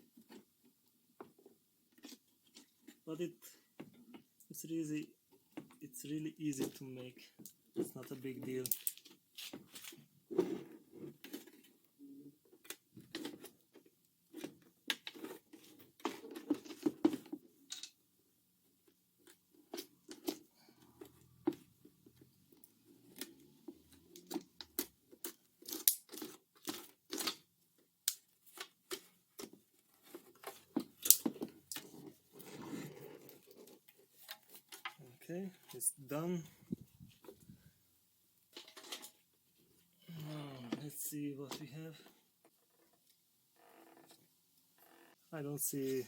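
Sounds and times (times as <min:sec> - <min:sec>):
plastic parts clicking apart: 0:08.6 - 0:10.0, 0:24.0 - 0:29.6, 0:30.4 - 0:31.9.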